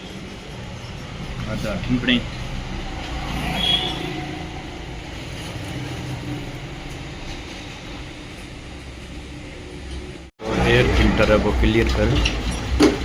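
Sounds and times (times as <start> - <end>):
short high squeal: 3.2 - 4.6.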